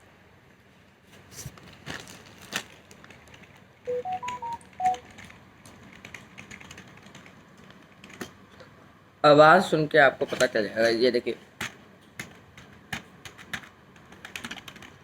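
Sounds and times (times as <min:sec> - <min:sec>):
electronic beeps: 0:03.9 - 0:05.0.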